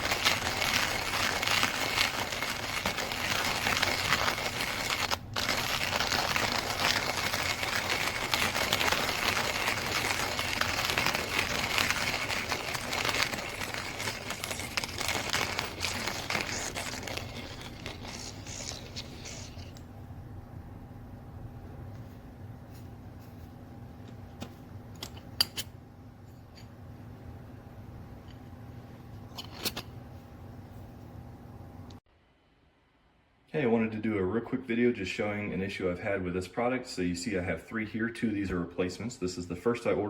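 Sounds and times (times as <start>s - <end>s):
coffee grinder crunching beans: 0.0s - 19.8s.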